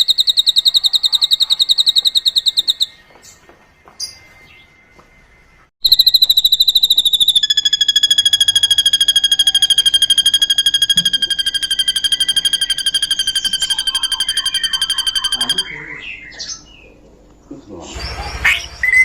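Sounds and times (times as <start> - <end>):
bird buzzing trill: 5.8 - 15.7
lower second tone: 7.6 - 16.0.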